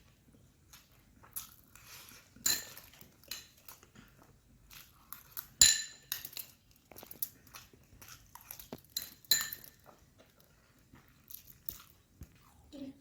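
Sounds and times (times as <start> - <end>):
cutlery clinking against a dish: 2.4 - 3.9, 5.2 - 6.6, 8.6 - 9.9.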